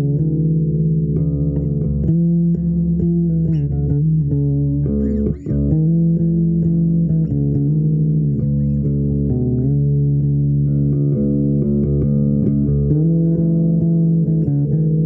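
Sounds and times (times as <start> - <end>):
low droning instrumental music: 0.0 - 15.0.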